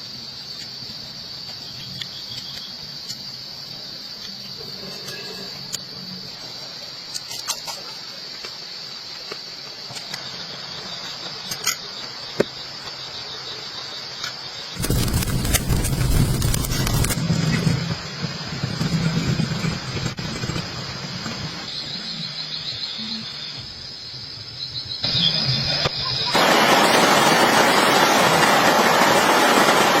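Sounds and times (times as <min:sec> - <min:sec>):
night insects trilling: 0:00.0 - 0:30.0
heavy rain hiss: 0:14.8 - 0:21.6, 0:26.3 - 0:30.0.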